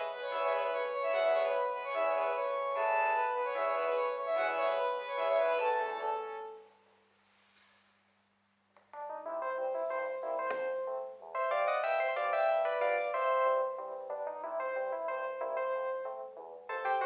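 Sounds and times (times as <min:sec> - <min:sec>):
phone melody ringtone: 0:01.0 - 0:06.6, 0:09.6 - 0:15.1.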